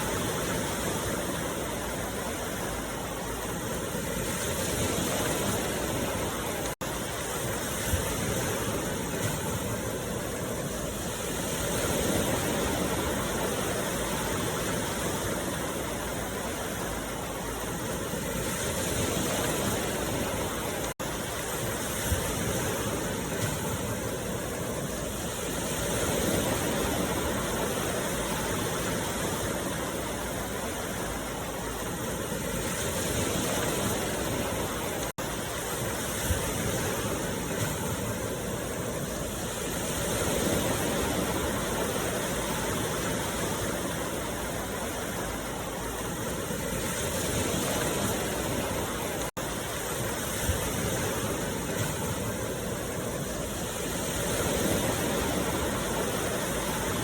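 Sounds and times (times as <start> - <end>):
rushing water: 0.0 - 57.0.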